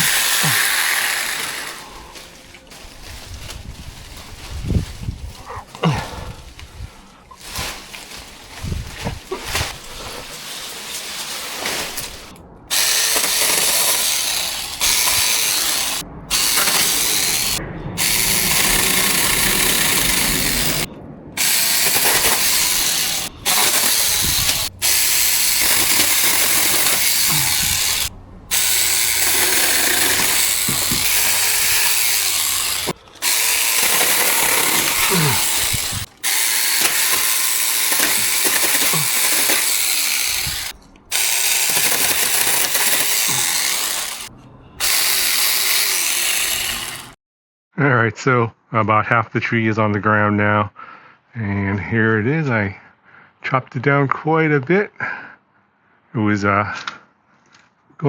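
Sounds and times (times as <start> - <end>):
electric chainsaw cutting branches: 0.0 - 3.6, 7.4 - 47.2.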